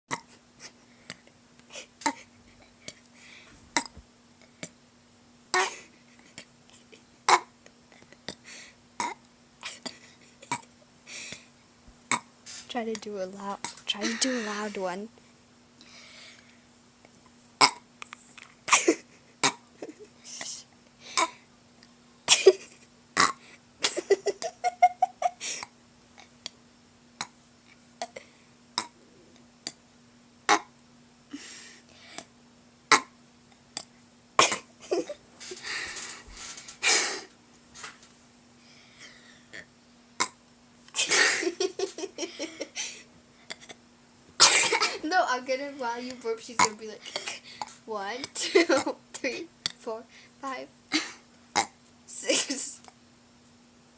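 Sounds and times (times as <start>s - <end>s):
breathing: 3.1s - 3.6s, 8.4s - 8.8s, 11.1s - 11.5s, 15.8s - 16.7s, 28.2s - 28.5s, 31.3s - 32.3s, 35.6s - 37.3s, 38.6s - 39.5s, 47.0s - 47.8s, 50.1s - 50.4s.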